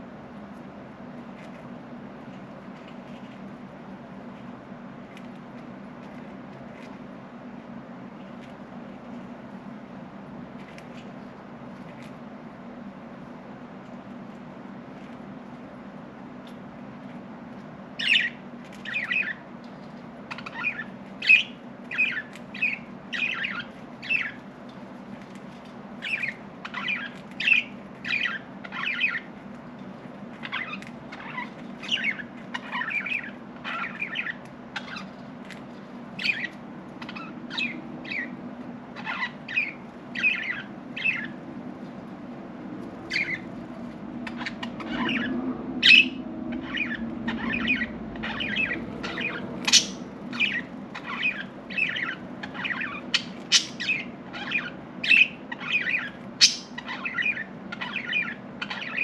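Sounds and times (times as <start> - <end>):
steady low hum: 0.0 - 59.0
budgerigars chirping and squawking: 18.0 - 19.4, 20.3 - 24.4, 26.0 - 29.3, 30.3 - 35.6, 36.2 - 41.4, 43.0 - 59.0.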